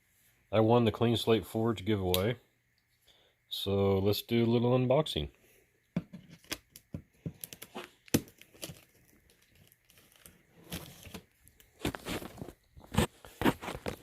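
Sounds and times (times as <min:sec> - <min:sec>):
packaging tearing and crinkling: 0:07.4 - 0:14.0.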